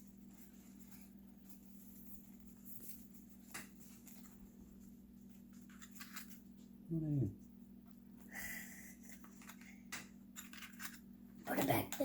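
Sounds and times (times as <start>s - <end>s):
paper cards rustling: 0.0s - 6.6s.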